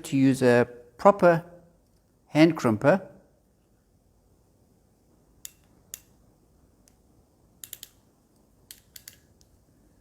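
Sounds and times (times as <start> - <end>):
hand crimper clicks: 7.6 - 8.0, 8.6 - 9.5.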